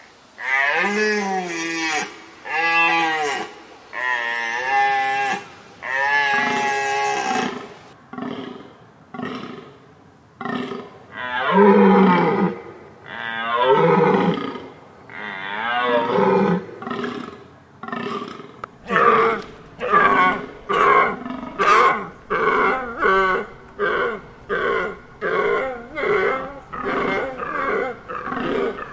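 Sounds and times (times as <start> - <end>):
deer calling: 0.4 - 7.8, 18.8 - 28.9.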